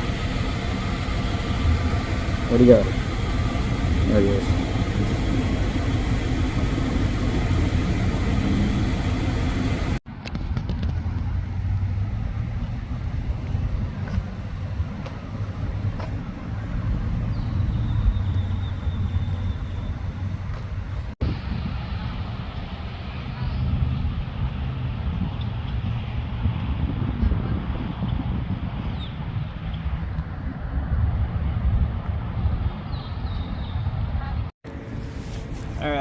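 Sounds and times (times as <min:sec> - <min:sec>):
car engine rumble: 0:00.0 - 0:36.0
road noise: 0:00.0 - 0:36.0.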